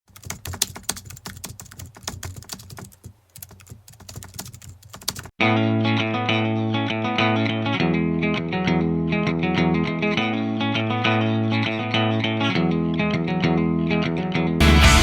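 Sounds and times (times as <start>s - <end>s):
loud music: 14.6s - 15.0s.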